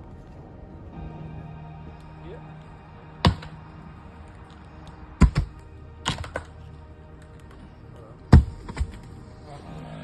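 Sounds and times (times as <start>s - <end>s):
faint background music: 0.0s - 10.0s
sharp knocks: 5.2s - 6.5s, 8.3s - 9.0s.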